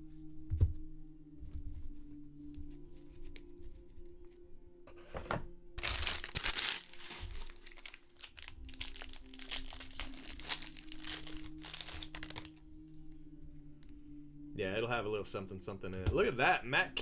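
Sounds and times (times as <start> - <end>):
wrapper crinkling: 5.8 - 12.6.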